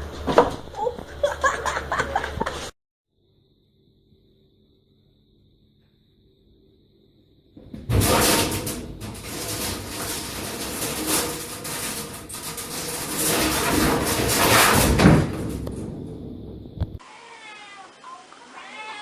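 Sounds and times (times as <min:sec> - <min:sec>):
noisy clattering and knocks: 0:00.0 - 0:01.8, 0:07.6 - 0:17.0
cat meowing: 0:17.0 - 0:19.0.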